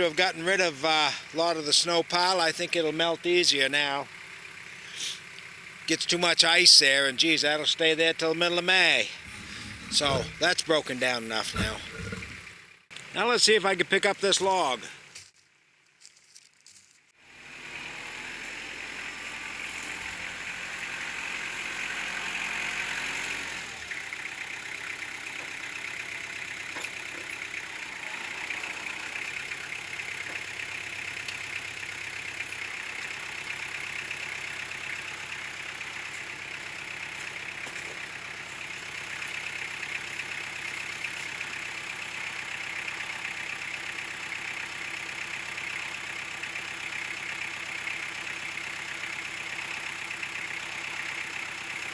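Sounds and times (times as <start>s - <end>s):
tractor diesel engine running: 0.0s - 51.9s
backhoe hydraulics working: 8.9s - 12.8s, 17.6s - 51.9s.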